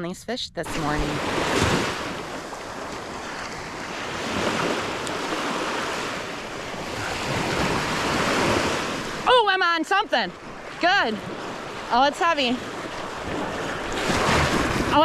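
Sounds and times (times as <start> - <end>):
wind rumbling on microphone: 0.6 - 9.3, 10.4 - 15.0
small surf breaking: 12.6 - 15.0.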